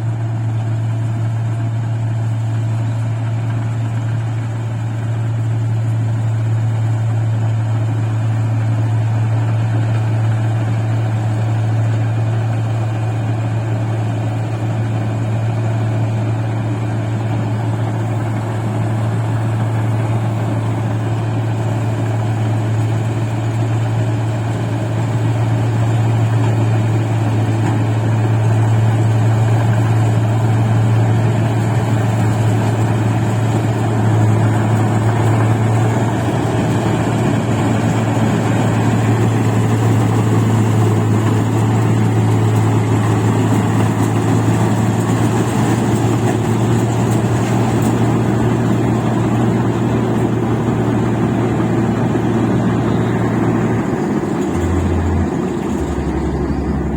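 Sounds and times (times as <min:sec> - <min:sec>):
diesel engine droning: 0:00.0 - 0:56.9
machinery noise: 0:25.4 - 0:56.9.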